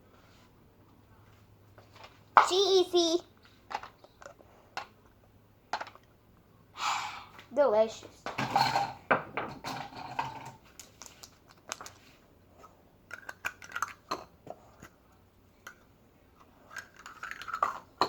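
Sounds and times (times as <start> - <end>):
cutlery clattering on dishes: 8.4 - 10.6.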